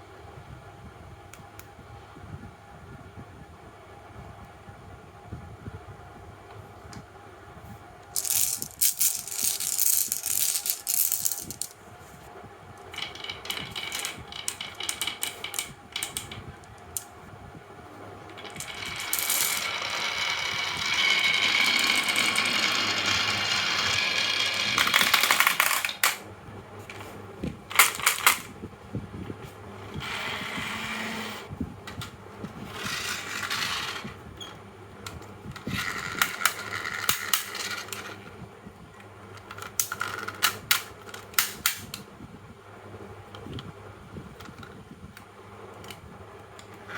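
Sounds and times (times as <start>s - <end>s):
marbles rolling down wooden track: 8.2s - 11.8s, 12.8s - 17.0s, 18.3s - 26.2s, 32.7s - 34.1s.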